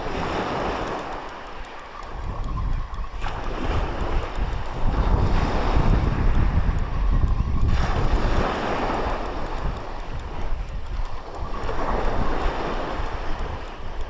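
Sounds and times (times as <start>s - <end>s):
waves washing on shore: 0.0s - 14.0s
wind buffeting microphone: 0.0s - 14.0s.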